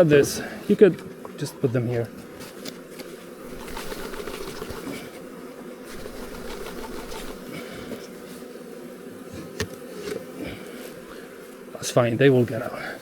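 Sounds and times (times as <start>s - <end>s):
bees buzzing: 0.0s - 13.0s.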